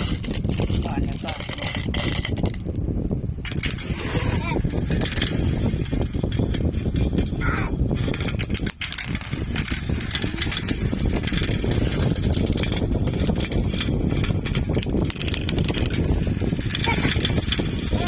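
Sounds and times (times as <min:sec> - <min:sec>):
marbles rolling and clicking: 0:00.0 - 0:18.0.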